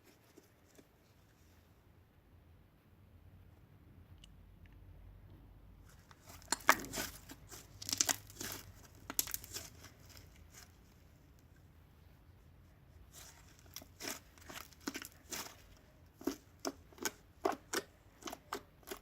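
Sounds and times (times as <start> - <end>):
slime squelching: 5.9 - 11.2, 12.9 - 19.0.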